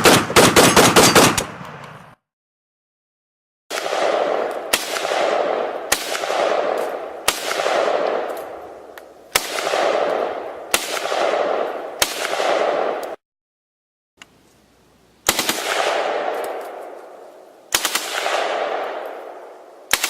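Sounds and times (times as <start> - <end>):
rifle shots with rolling echo: 0.0 - 2.2, 3.7 - 13.2, 15.2 - 20.0.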